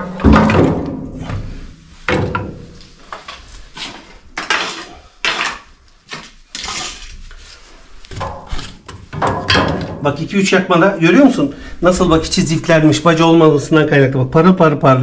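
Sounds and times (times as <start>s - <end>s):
wooden knocks and clunks: 0.0s - 2.8s, 8.1s - 10.0s.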